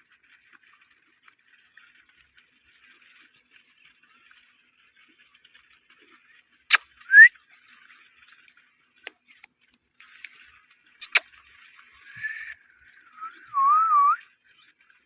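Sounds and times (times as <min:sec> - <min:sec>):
parrot rising whistle: 0:07.1 - 0:07.3, 0:12.1 - 0:12.6, 0:13.2 - 0:14.2
parrot chattering softly: 0:11.0 - 0:11.2
sharp clicks: 0:11.0 - 0:11.2.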